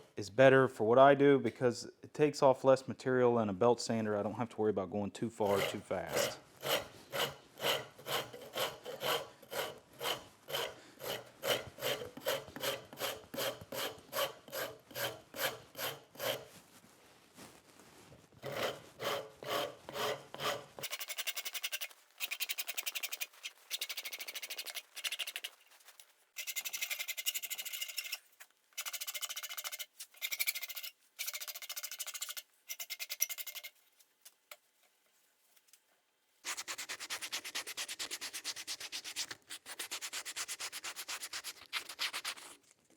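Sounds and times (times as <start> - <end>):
wood rasp scraping wood: 5.4 - 16.5, 18.4 - 25.5
sanding wood: 5.5 - 16.5, 18.4 - 21.8.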